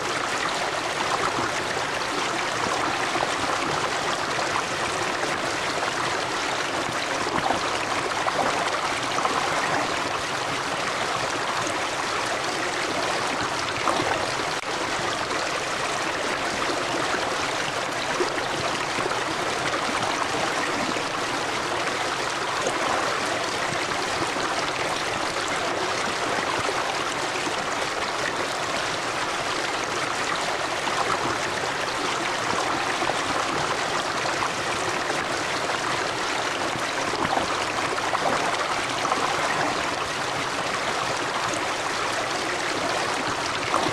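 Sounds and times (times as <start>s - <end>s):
river water over rocks: 0.0s - 43.9s.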